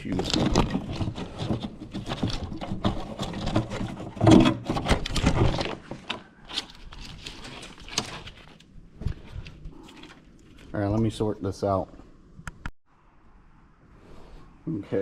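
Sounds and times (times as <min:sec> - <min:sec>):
wiring harness rustling and clicking: 0:00.0 - 0:11.1.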